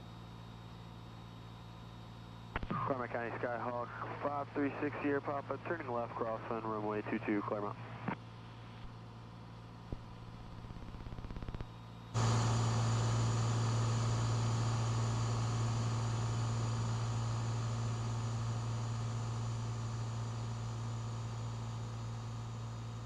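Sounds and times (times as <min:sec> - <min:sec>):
aircraft engine and propeller drone: 0:02.5 - 0:08.0, 0:09.3 - 0:23.0.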